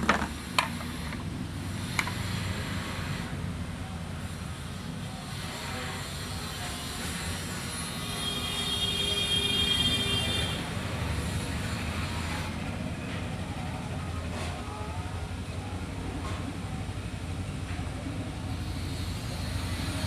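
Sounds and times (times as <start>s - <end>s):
vehicle engine rumble: 10.6s - 20.0s.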